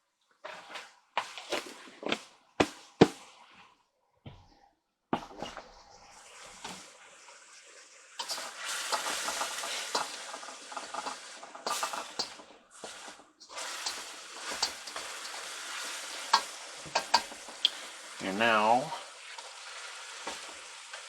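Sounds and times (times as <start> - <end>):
onions sizzling in a wok: 6.0 - 21.0
spatula scraping a pan: 8.2 - 17.9.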